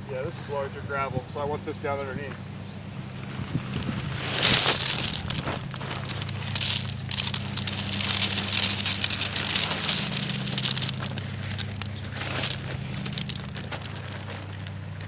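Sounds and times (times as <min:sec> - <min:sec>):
steady low hum: 0:00.0 - 0:15.0
gravel rattling into hole: 0:03.0 - 0:15.0
plastic bag crinkling: 0:03.2 - 0:15.0.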